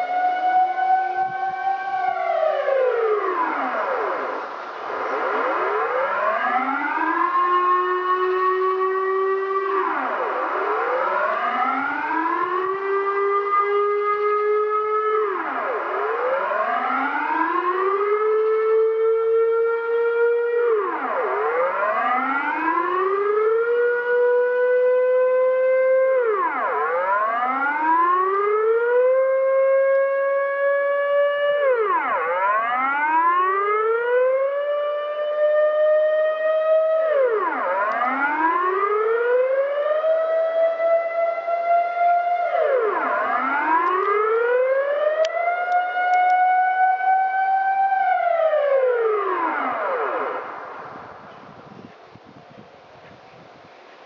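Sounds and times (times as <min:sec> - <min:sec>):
air-raid siren wailing: 0:00.0 - 0:52.6.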